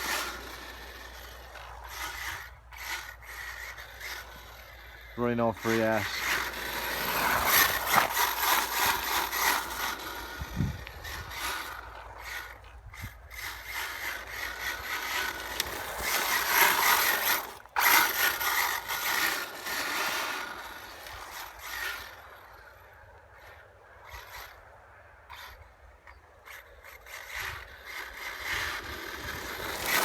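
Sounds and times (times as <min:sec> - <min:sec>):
electric motor whine: 0:00.0 - 0:23.5, 0:26.6 - 0:30.0.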